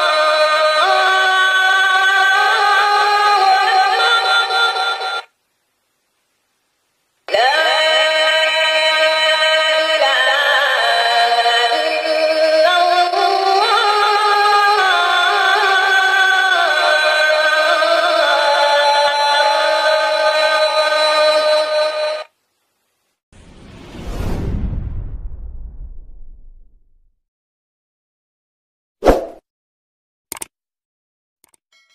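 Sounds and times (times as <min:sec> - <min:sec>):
recorded call to prayer singing: 0:00.0 - 0:05.3, 0:07.3 - 0:22.3.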